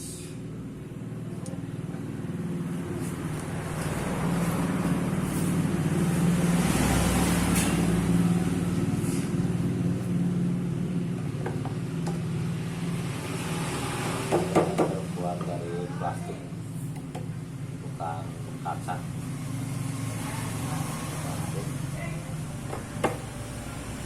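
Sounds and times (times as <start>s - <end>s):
vehicle engine humming: 0.0s - 24.0s.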